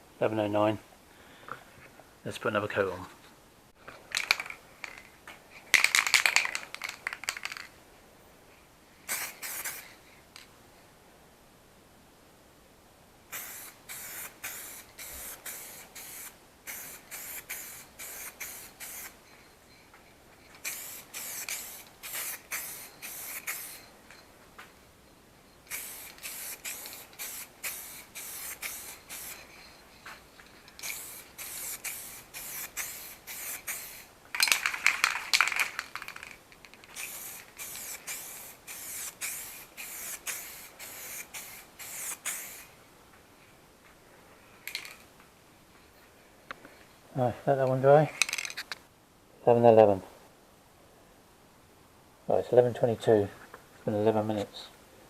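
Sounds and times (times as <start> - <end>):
aerosol spray paint hissing: 9.1 - 10.0, 13.3 - 19.2, 20.6 - 23.9, 25.7 - 29.6, 30.7 - 34.1, 36.9 - 42.7.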